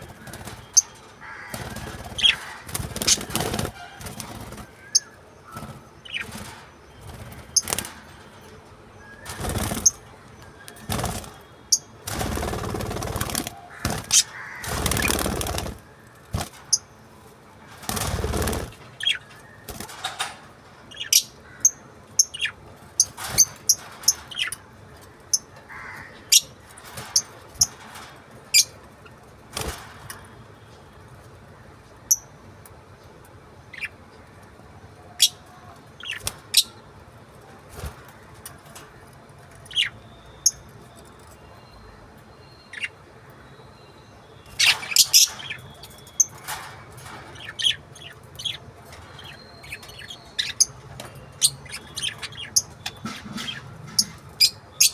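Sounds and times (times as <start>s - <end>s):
parrots chirping and squawking: 0.0s - 8.2s, 9.1s - 28.8s, 35.1s - 36.8s, 39.5s - 40.7s, 42.6s - 43.0s, 44.5s - 54.9s.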